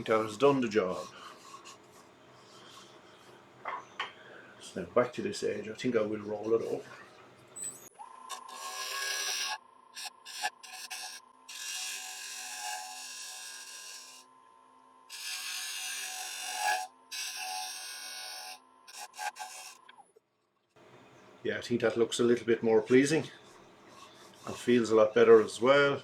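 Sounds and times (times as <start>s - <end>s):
turning tool scraping wood: 0.0s - 3.3s, 5.5s - 7.1s, 7.8s - 14.2s, 15.1s - 19.9s, 22.8s - 26.0s
wood lathe whining: 8.3s - 14.2s, 15.1s - 19.8s.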